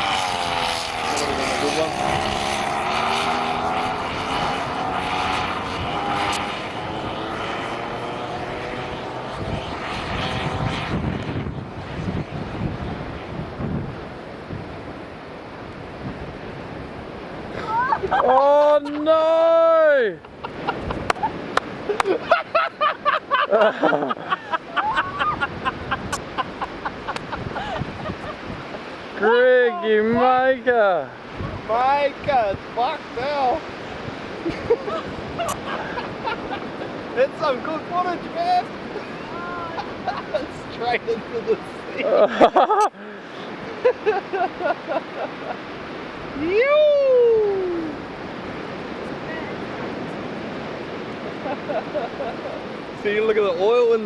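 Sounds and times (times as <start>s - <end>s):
chainsaw engine buzzing: 0.0s - 9.8s
surf: 0.0s - 54.0s
wind: 0.0s - 54.0s
people's voices: 29.2s - 32.0s, 39.2s - 43.2s.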